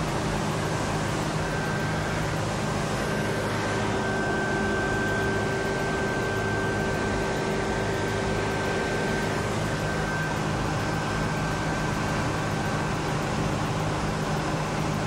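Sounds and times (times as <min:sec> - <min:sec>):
faint high whine: 0:00.0 - 0:15.0
steady mechanical drone: 0:00.0 - 0:15.0.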